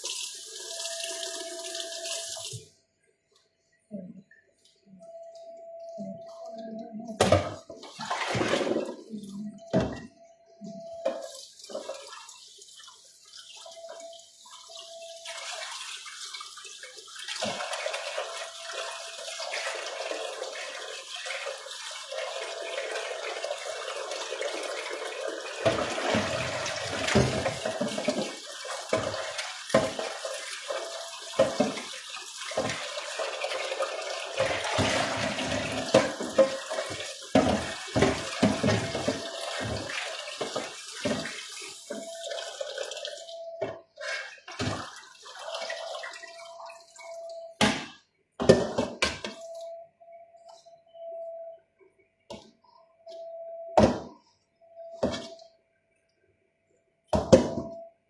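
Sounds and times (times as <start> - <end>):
tap water running into sink: 0.0 - 2.7, 11.0 - 43.8, 44.5 - 47.3
items clattering in sink: 7.2 - 10.2, 10.8 - 12.9, 17.2 - 49.8.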